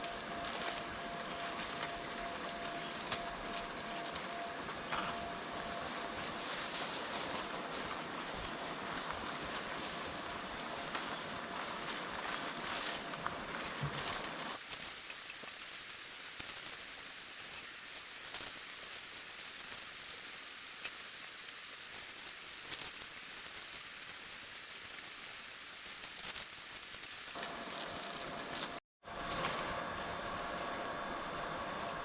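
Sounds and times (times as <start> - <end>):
faint high whine: 14.6 - 27.4
steady high hiss: 14.6 - 27.4.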